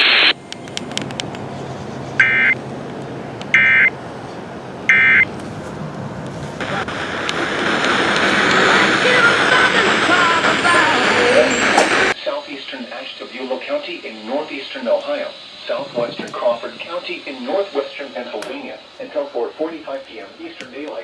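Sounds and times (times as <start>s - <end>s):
digital data tone bursts: 2.2s - 2.6s, 3.5s - 3.9s, 4.9s - 5.3s
steady hiss: 6.3s - 21.0s.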